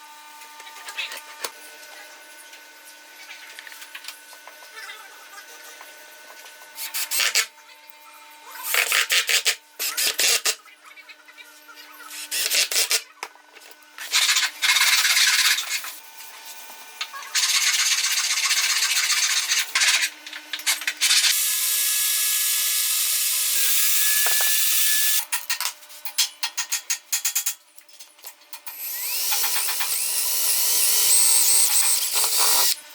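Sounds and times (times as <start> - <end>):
tool rasping strokes: 14.0 - 16.0, 28.8 - 32.8.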